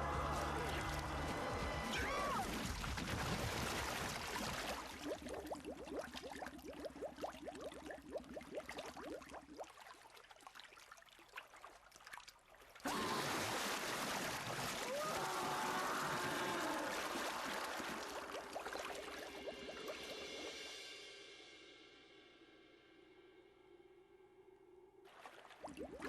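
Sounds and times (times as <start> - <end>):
rush of water: 0.0 - 5.6, 12.8 - 20.6.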